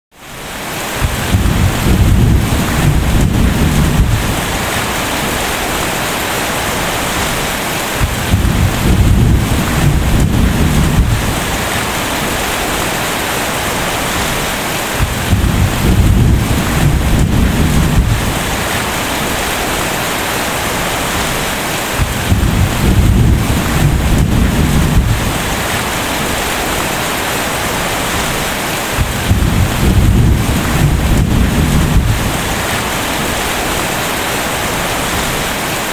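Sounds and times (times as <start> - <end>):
heavy rain: 0.1 - 35.9
thunder rumbles: 1.0 - 5.8, 7.9 - 12.8, 13.9 - 19.8, 22.0 - 26.4, 29.0 - 34.0.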